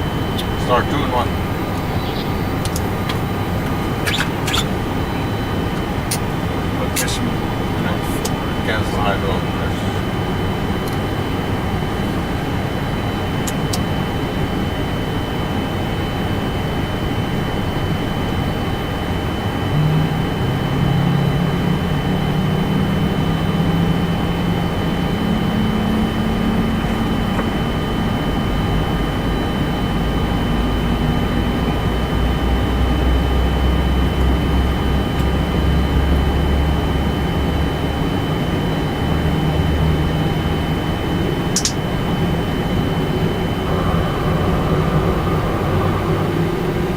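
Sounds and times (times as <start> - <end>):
engine spooling up hum: 0.0 - 46.9
deep rumble: 38.9 - 46.9.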